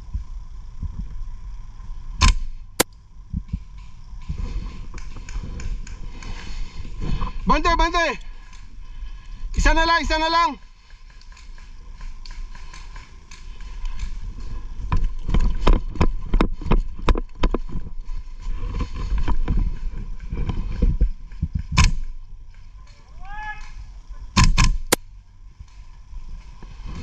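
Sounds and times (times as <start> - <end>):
airsoft gun shots: 2.2 - 2.6, 24.4 - 25.0.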